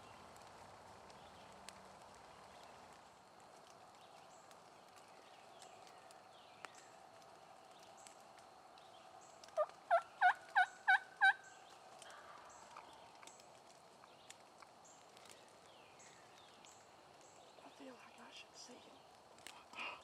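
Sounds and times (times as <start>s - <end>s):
faint background birdsong: 0.0s - 20.0s
turkey yelping: 9.6s - 11.5s.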